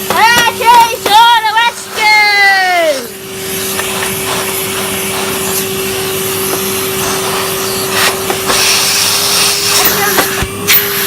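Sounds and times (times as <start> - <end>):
vacuum cleaner whining: 0.0 - 11.0.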